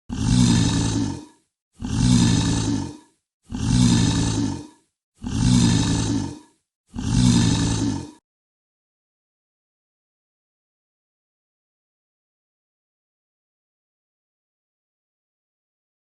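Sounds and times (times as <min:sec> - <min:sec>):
deep growling breath with hiss: 0:00.1 - 0:08.2.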